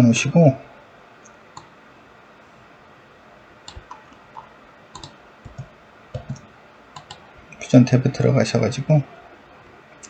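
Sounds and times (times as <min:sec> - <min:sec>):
faint computer mouse clicks: 0:03.7 - 0:07.2.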